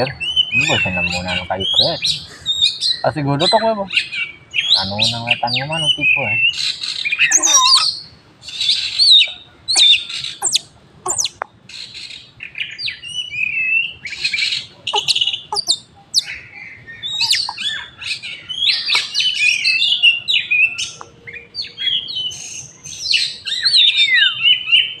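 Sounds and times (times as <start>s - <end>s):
bird singing varied whistles: 0.0s - 11.4s, 12.0s - 25.0s.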